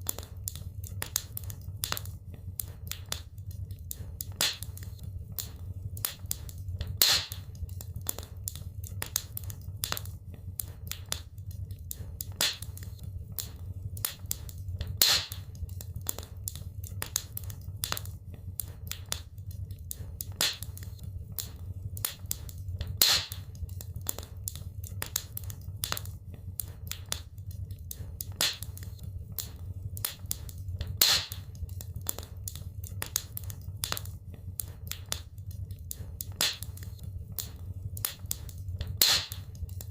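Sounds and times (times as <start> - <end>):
fire popping: 0.0 - 39.9
wood fire crackling: 0.0 - 39.9.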